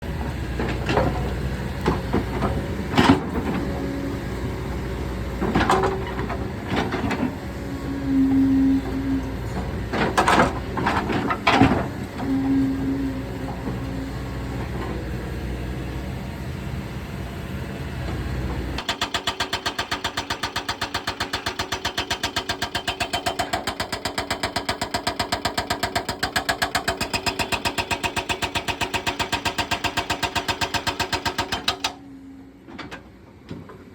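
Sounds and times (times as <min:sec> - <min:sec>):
excavator diesel engine running: 0:00.0 - 0:33.9.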